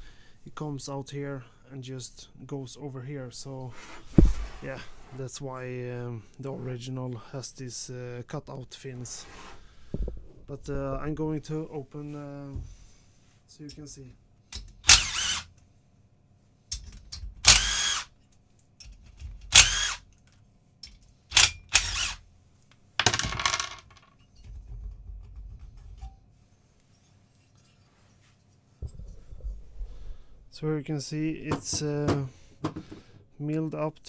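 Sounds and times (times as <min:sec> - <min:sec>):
loud metallic tool bursts: 0:14.8 - 0:15.4, 0:17.4 - 0:18.1, 0:19.5 - 0:20.0, 0:21.3 - 0:22.2
clatter of parts handled: 0:16.7 - 0:17.5, 0:18.8 - 0:19.5, 0:23.0 - 0:26.2.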